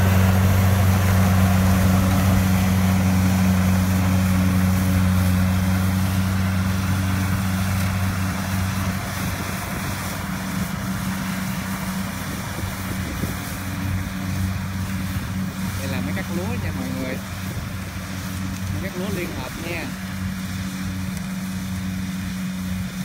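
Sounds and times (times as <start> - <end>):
combine harvester engine running: 0.0 - 23.0.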